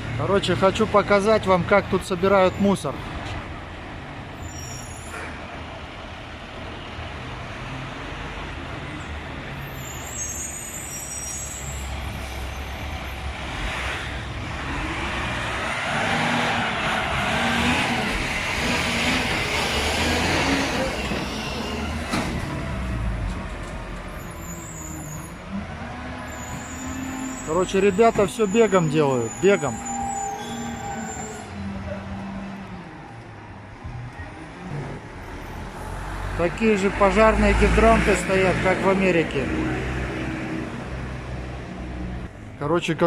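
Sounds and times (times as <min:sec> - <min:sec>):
garbage truck running: 0:11.8 - 0:32.2.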